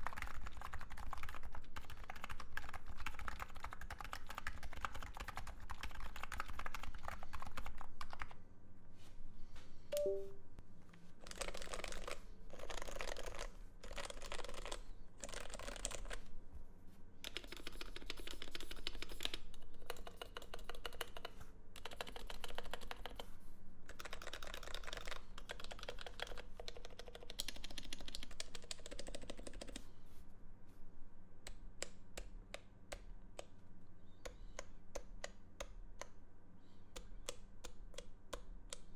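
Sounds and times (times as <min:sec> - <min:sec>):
keyboard typing: 0:00.0 - 0:08.4, 0:10.0 - 0:10.3, 0:11.2 - 0:16.2, 0:17.2 - 0:23.3, 0:23.9 - 0:29.8.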